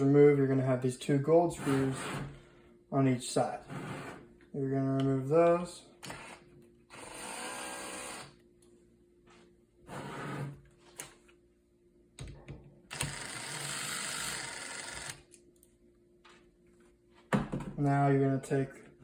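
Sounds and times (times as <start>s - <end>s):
power screwdriver running: 6.0s - 8.4s, 12.9s - 15.2s.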